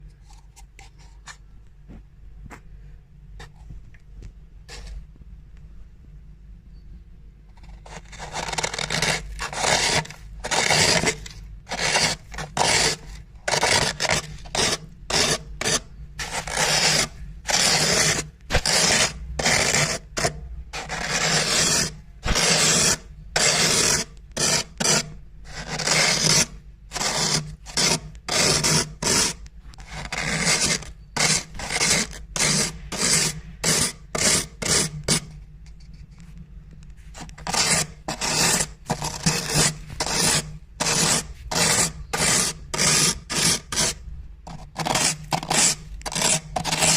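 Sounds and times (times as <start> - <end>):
glass scraping freezer frost: 7.6 - 35.3, 37.1 - 46.9.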